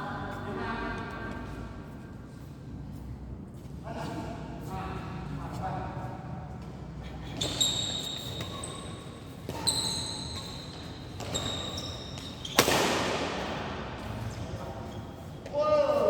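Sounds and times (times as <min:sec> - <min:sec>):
racket hitting shuttlecock: 0:12.2 - 0:14.0.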